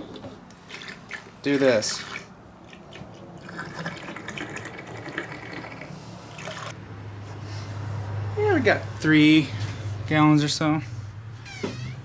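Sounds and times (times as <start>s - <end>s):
liquid fuel pouring into tank: 0.6s - 6.8s.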